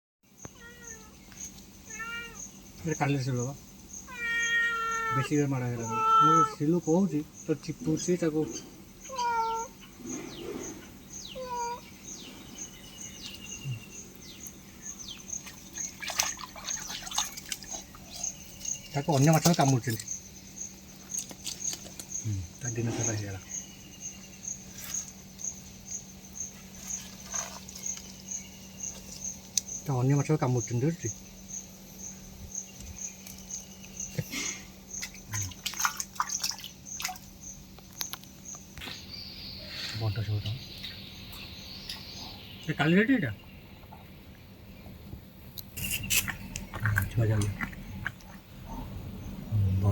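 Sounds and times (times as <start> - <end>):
small birds chirping: 0.3 - 49.9
cat meowing: 0.5 - 1.2, 1.9 - 2.4, 4.1 - 6.6, 9.0 - 9.8, 11.4 - 11.9.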